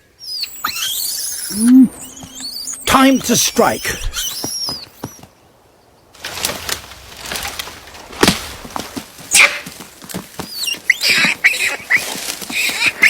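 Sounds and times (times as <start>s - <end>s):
monkey shrill cries: 0.2s - 5.2s, 10.5s - 13.0s
monkeys scuffling and slapping: 6.3s - 13.0s.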